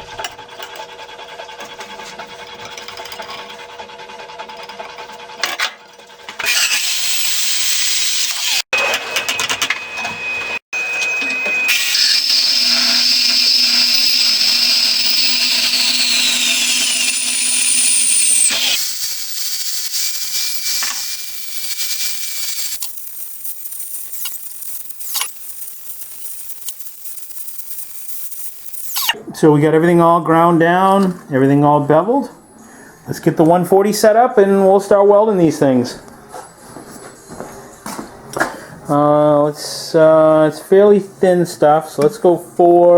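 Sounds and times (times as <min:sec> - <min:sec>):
angle grinder grinding steel: 0:06.3 - 0:29.2.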